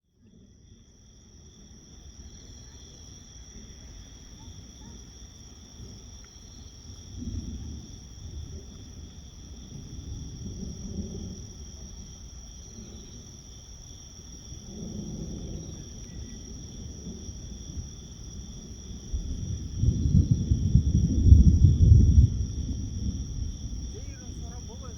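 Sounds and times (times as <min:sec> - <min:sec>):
crickets chirring: 0:00.1 - 0:24.9.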